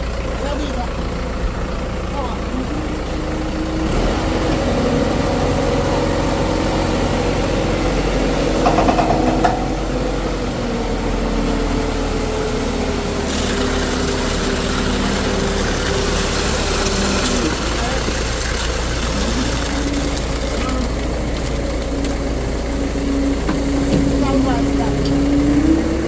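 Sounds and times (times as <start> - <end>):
engine idling: 0.0 - 26.0
rapid rattle: 8.6 - 10.0.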